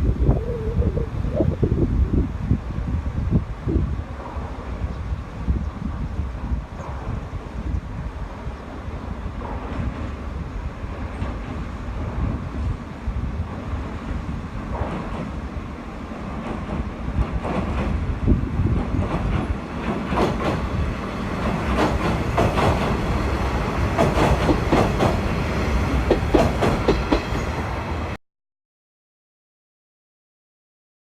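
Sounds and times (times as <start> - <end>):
low train rumble: 0.0 - 28.2
wheels clacking over rail joints: 16.2 - 27.6.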